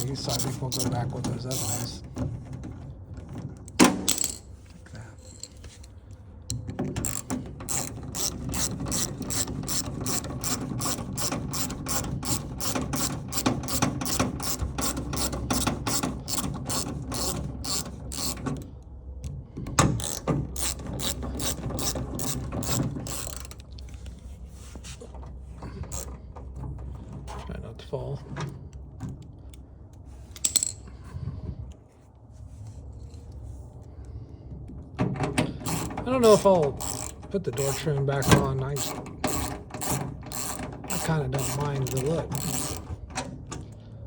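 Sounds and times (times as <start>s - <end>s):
socket ratchet clicking: 0.0s - 1.9s, 6.5s - 18.9s, 19.8s - 23.9s, 25.9s - 26.1s, 35.6s - 43.0s.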